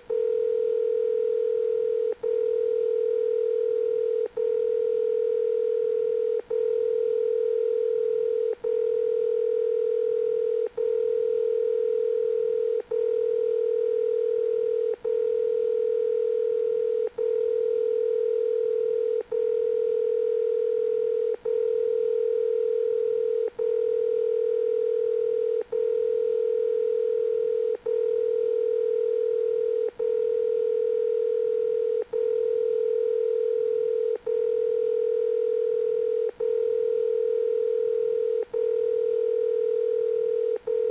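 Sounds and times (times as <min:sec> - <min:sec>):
electronic telephone ring tone: 0:00.1 - 0:40.9.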